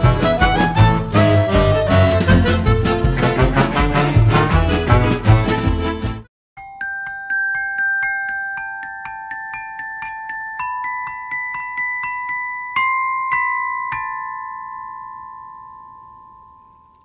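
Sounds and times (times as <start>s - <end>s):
glockenspiel notes ringing: 6.6s - 17.0s.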